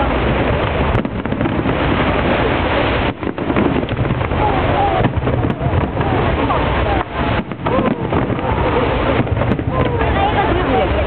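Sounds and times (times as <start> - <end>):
fireworks crackling and bursting: 0.0 - 11.0
voices: 4.0 - 11.0.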